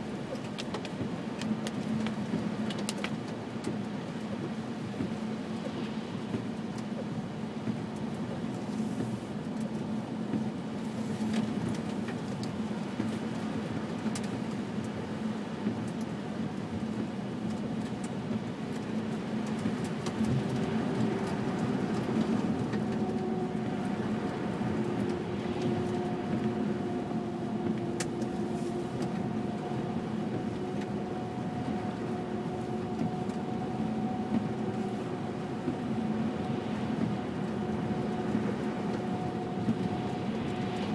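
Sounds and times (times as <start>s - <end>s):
car engine and tyre drone: 0.0s - 40.9s
light ticks: 0.3s - 7.1s, 14.0s - 15.0s.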